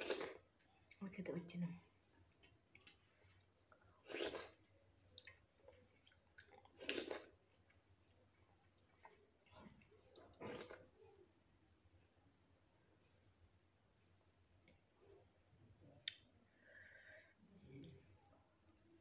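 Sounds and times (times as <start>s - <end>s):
person chewing food: 0.0s - 1.0s, 2.1s - 11.0s.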